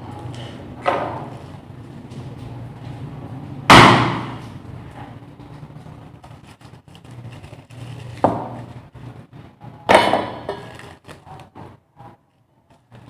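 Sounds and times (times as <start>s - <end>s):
loud thumps: 3.7s - 4.4s.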